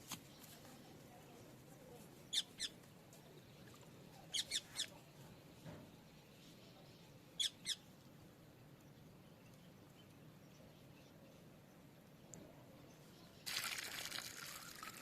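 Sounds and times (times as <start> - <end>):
small bird chirping: 2.2 - 2.8, 3.6 - 5.0, 6.4 - 7.9.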